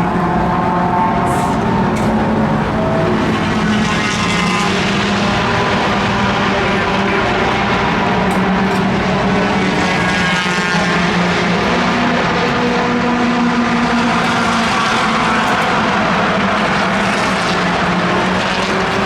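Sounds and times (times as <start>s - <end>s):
race car engine running: 0.0s - 19.0s.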